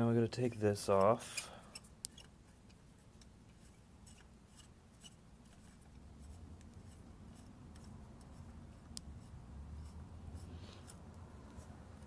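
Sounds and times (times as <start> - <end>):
small clicks and light scraping: 0.9 - 12.0.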